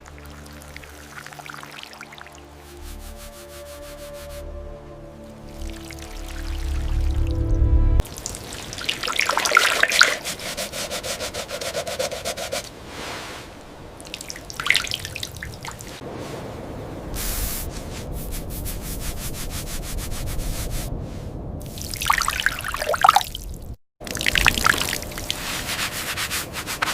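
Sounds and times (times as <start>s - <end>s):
water dripping and trickling: 0.0s - 4.4s, 5.2s - 12.1s, 14.0s - 16.0s, 21.6s - 25.5s
scraping on a hard object: 10.0s - 12.7s.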